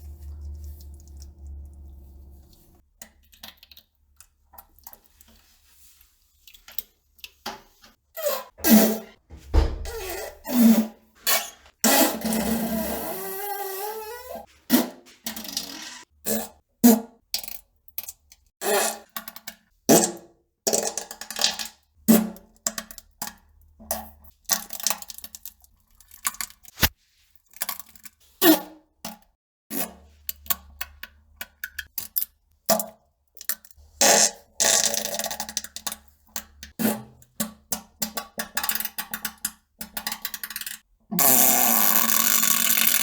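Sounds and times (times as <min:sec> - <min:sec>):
fart sounds: 0:41.2 - 0:43.0.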